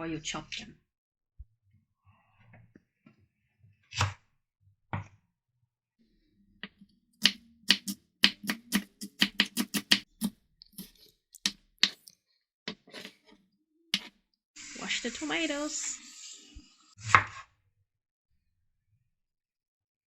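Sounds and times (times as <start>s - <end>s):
knife chopping on cutting board: 7.2s - 12.0s.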